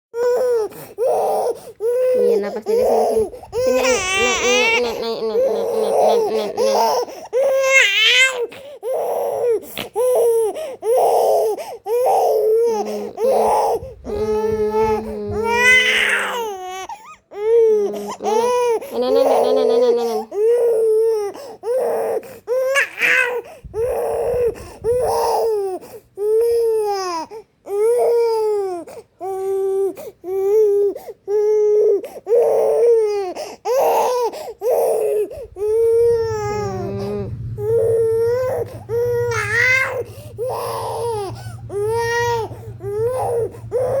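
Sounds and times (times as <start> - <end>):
small child crying: 0.2 - 44.0
steady low hum: 1.8 - 7.4, 12.4 - 16.0, 23.5 - 25.6, 34.8 - 44.0.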